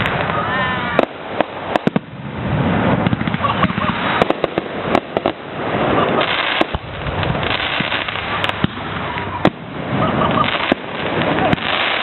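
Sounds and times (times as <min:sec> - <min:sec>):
fireworks bangs: 0:00.0 - 0:12.0
fireworks crackling: 0:00.0 - 0:12.0.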